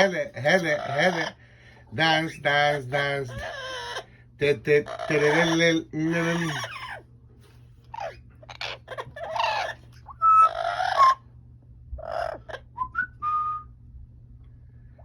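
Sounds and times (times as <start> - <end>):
parrot squawking and chattering: 0.0 - 1.4, 2.6 - 7.1, 7.8 - 11.3, 12.0 - 12.8
parrot whistling: 8.0 - 11.2, 12.0 - 13.7.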